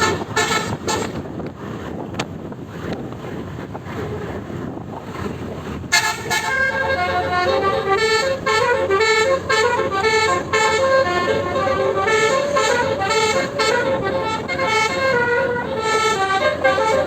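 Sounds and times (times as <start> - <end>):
bus musical horn playing fast tune: 0.0 - 1.4, 5.8 - 17.0
road noise: 0.0 - 17.0
wind: 0.0 - 17.0.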